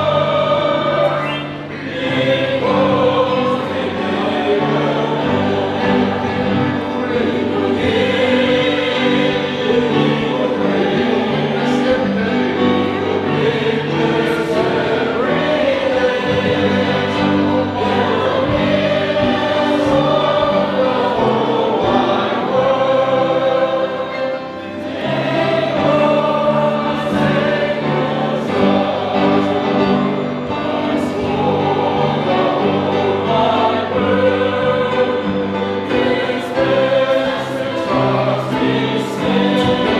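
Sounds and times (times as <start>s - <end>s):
choir singing a hymn: 0.0s - 39.9s.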